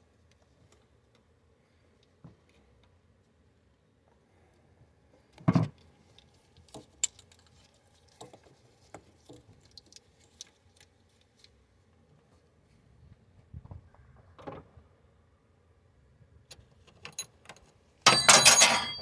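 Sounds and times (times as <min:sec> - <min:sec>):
metal hand tools clinking: 0:18.1 - 0:19.0.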